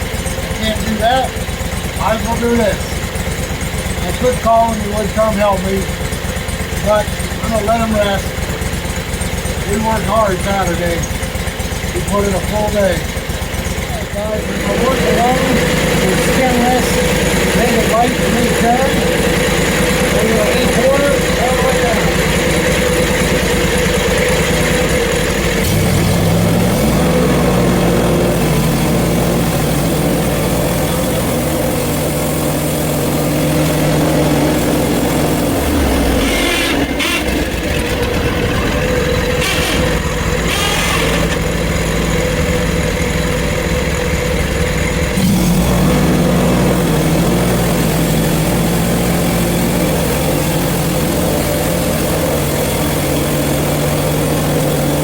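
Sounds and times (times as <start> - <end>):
sawmill engine running: 0.0 - 55.0
band blade sawing through log: 35.6 - 37.6, 39.4 - 41.4.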